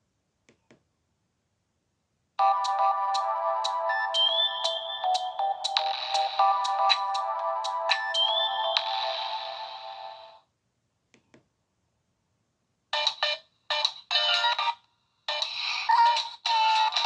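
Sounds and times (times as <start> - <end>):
polyphonic mobile phone ringtone: 2.4 - 10.4.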